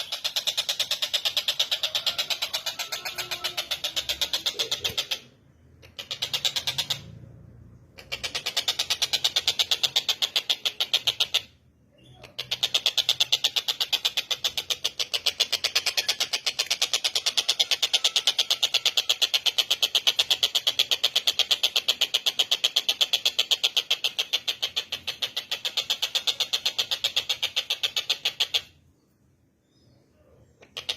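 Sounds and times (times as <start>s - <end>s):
kingfisher rattling call: 0.0s - 5.3s.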